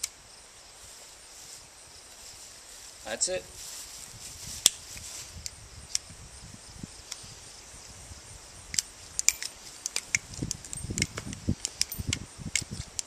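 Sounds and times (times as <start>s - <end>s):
insects chirring: 0.0s - 13.0s
metallic clicks of revolver: 5.4s - 6.1s, 8.7s - 13.0s.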